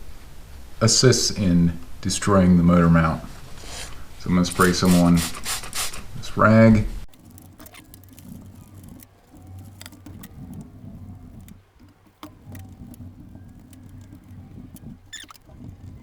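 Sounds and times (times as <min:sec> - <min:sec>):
light clicks: 0:07.1 - 0:16.0
rag rubbing on metal: 0:07.1 - 0:16.0.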